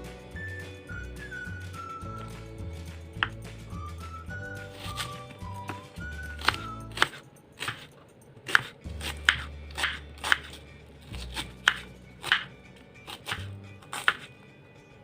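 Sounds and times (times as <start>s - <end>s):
knife chopping on cutting board: 2.1s - 3.7s, 4.4s - 14.4s.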